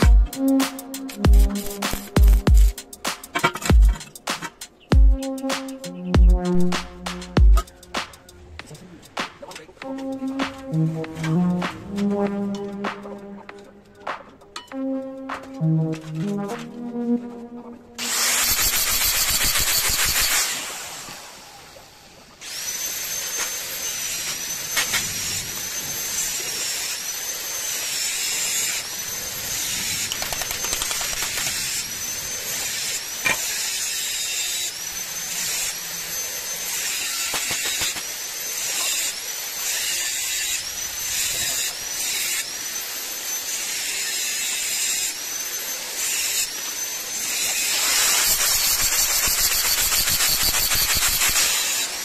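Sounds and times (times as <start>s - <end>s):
electric drill whining: 18.0s - 52.0s.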